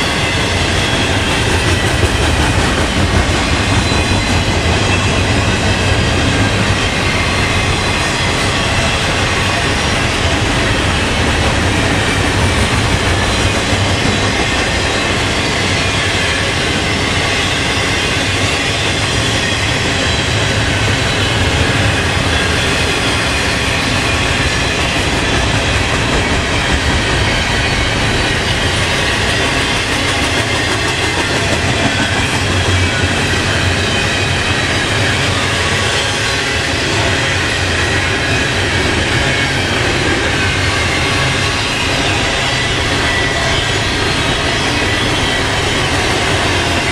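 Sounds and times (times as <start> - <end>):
wheels clacking over rails: 0.0 - 35.9
freight train rumbling past: 0.0 - 46.9.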